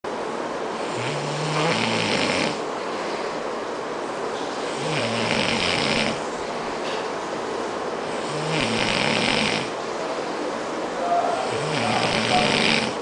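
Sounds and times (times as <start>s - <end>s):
man snoring: 0.8s - 2.6s, 4.7s - 6.2s, 8.0s - 9.8s, 11.4s - 13.0s.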